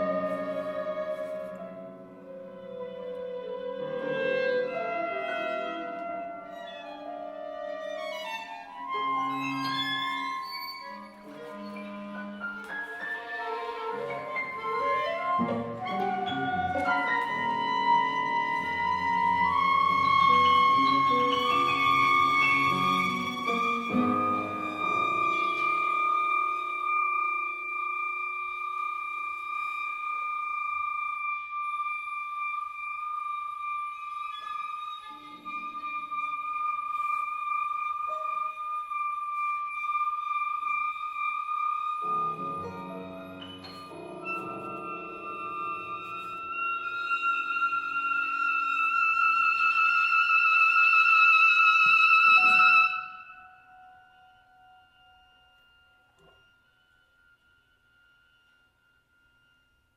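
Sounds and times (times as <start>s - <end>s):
chamber ensemble high held note: 8.8s - 29.4s.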